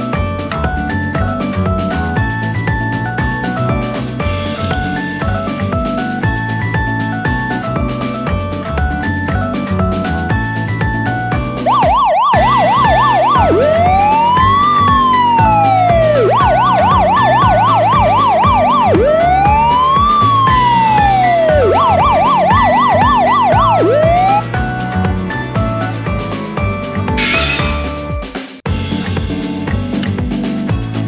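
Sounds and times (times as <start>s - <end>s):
background music: 0.0s - 31.0s
emergency vehicle siren: 11.6s - 24.8s.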